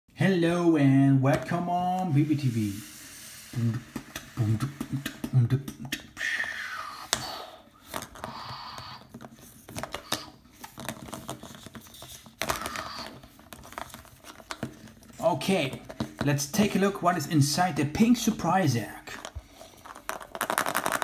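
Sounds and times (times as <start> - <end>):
small objects clicking: 19.2 - 21.0.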